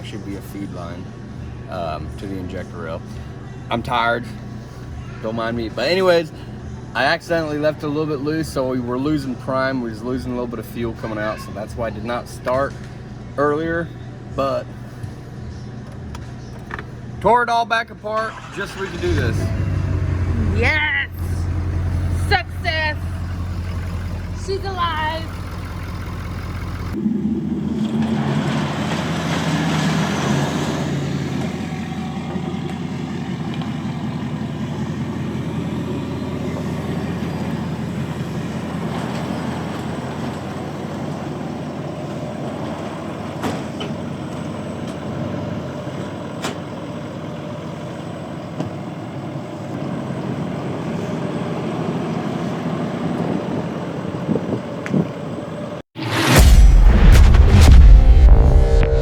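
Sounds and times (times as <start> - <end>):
diesel engine running: 18.2 - 53.4, 56.0 - 59.0.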